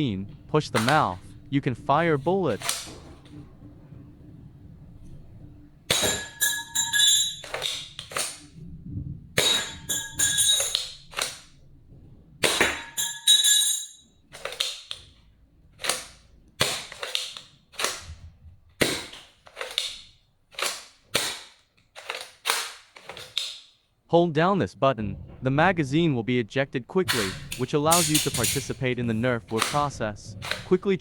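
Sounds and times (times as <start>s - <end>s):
toy blaster plastic clacks: 14.4s - 15.1s, 15.8s - 18.2s, 18.8s - 23.7s, 29.5s - 29.9s.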